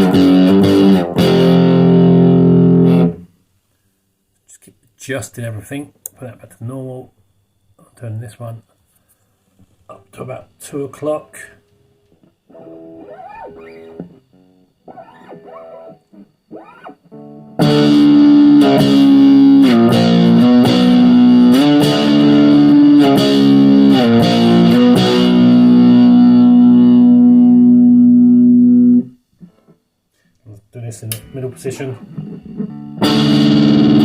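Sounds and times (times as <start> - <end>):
quiet picked guitar notes: 0.0 - 3.2, 12.2 - 29.8, 31.1 - 34.0
distorted electric guitar chords: 0.0 - 3.3, 11.7 - 29.8, 31.1 - 34.0.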